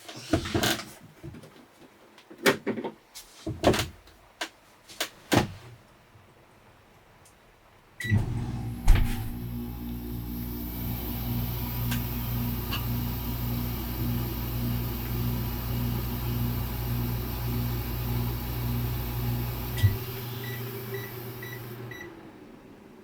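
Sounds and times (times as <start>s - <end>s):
appliance click: 8.0s - 13.8s
appliance humming: 8.0s - 23.0s.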